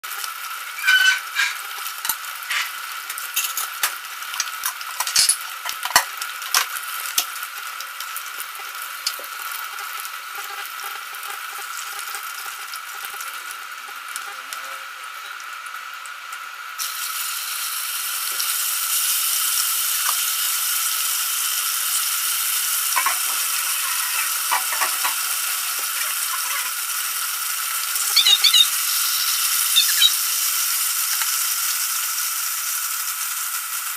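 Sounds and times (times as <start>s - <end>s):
meat sizzling in hot oil: 0.0s - 33.9s
utensil stirring clicks and scrapes: 23.0s - 26.8s.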